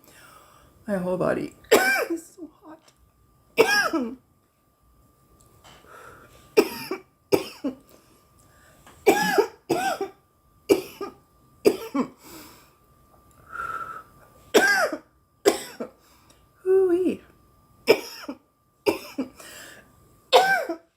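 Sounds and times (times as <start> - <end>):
woman coughing: 1.7 - 2.2, 3.6 - 4.2, 6.6 - 7.8, 9.1 - 12.2, 14.6 - 16.0, 17.9 - 19.4, 20.3 - 20.9.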